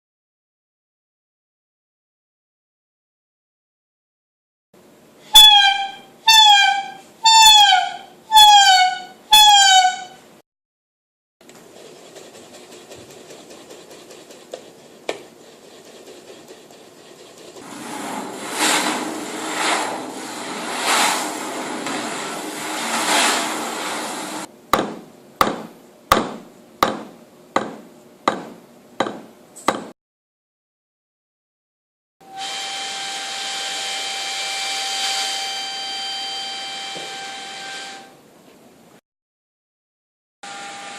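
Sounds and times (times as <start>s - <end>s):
rushing noise: 17.6s - 24.5s
sharp ringing knocks: 24.8s - 29.9s.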